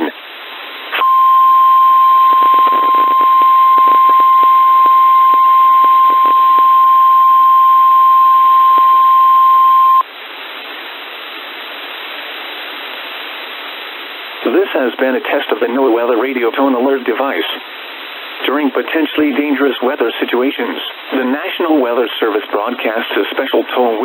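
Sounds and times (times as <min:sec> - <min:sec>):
radio static with crackles: 0:00.9 - 0:10.0, 0:18.4 - 0:24.0
steady high alert tone: 0:01.0 - 0:10.0.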